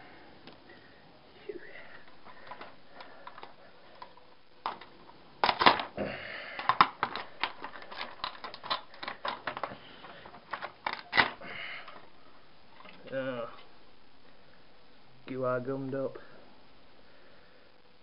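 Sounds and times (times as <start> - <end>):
hand tools clicking and clattering: 6.6 - 11.4.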